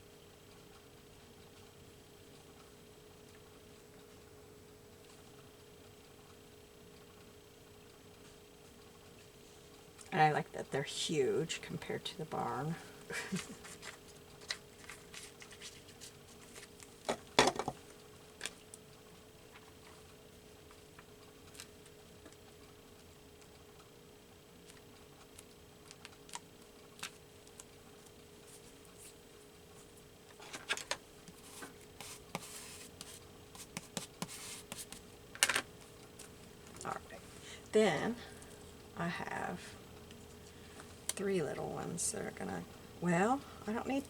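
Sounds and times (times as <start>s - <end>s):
faint steady hum: 0.0s - 44.0s
paper rustling: 13.3s - 16.9s, 30.4s - 35.1s.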